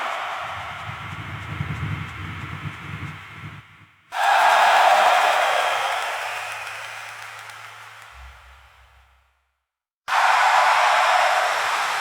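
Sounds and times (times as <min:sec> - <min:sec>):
crowd cheering and yelling: 0:00.0 - 0:01.4, 0:04.1 - 0:07.6, 0:10.1 - 0:12.0.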